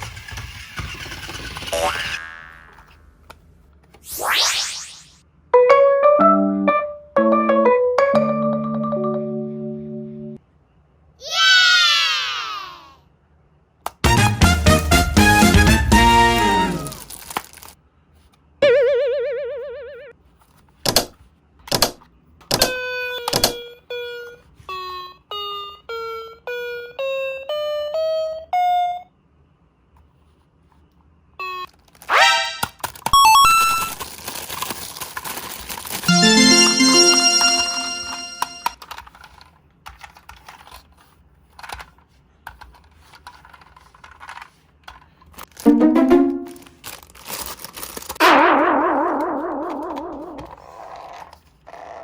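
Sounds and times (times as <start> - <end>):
electronic beeping melody: 33.2 - 34.0, 36.1 - 38.8.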